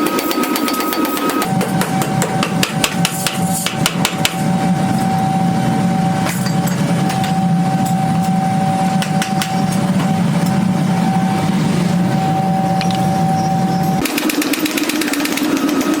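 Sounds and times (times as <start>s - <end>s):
machinery humming: 0.0s - 16.0s
machine rapid ticking: 14.0s - 16.0s.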